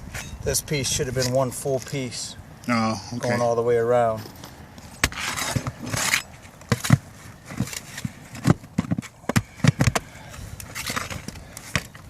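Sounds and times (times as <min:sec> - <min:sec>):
knocks and scuffs on shingle roof: 0:05.0 - 0:12.0.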